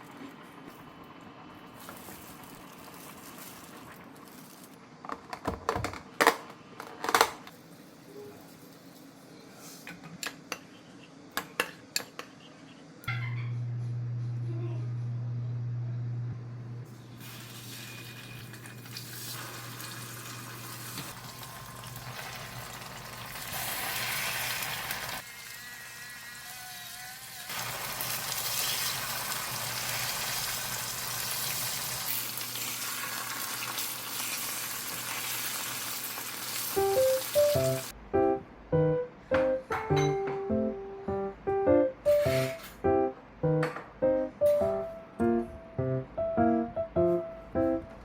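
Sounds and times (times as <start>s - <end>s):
food sizzling in frying pan: 17.2s - 25.6s, 27.5s - 37.9s
background music: 36.8s - 48.0s.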